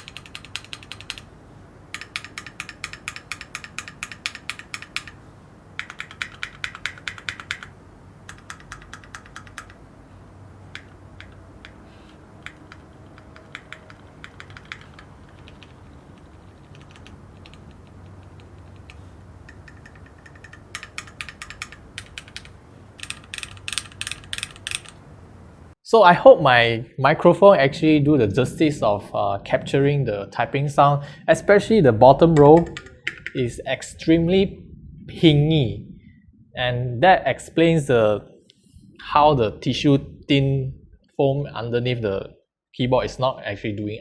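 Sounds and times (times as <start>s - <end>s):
mechanical keyboard typing: 0.0s - 1.3s, 1.9s - 5.2s, 5.8s - 9.8s, 10.7s - 25.0s, 32.4s - 33.4s.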